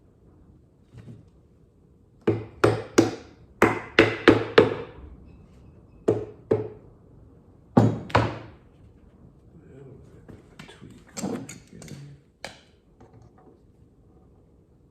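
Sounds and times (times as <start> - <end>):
hammer knocking nails into wood: 2.2 - 5.0.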